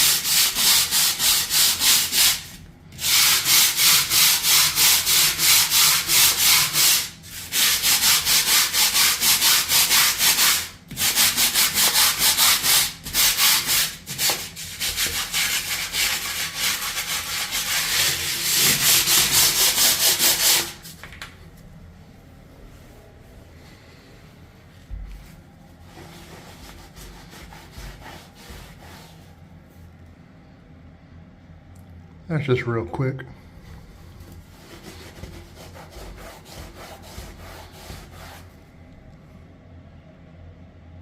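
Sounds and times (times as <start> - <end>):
brush scrubbing tile grout: 0.0 - 21.0, 24.6 - 29.8, 33.9 - 38.6.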